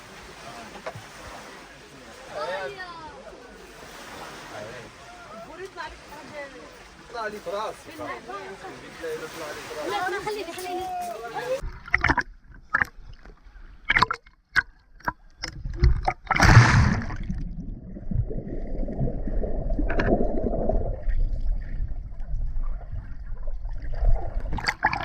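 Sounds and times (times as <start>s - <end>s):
loud rush of water: 0.0s - 11.6s
seawater washing at shore: 0.0s - 13.1s.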